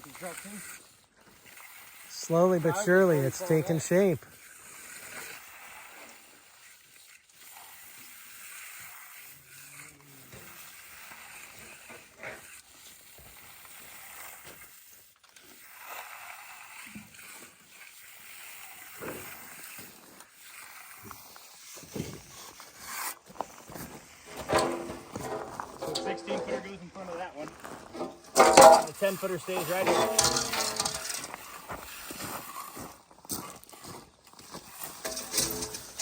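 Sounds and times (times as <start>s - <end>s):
tools scraping wet concrete: 0.0s - 36.0s.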